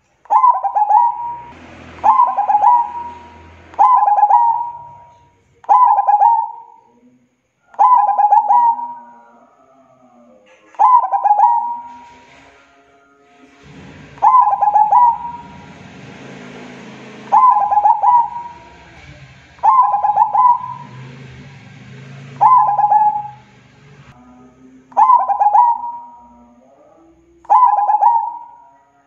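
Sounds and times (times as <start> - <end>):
dove stuttering coos: 0.3 - 6.7, 7.8 - 12.5, 13.6 - 23.5, 25.0 - 26.4.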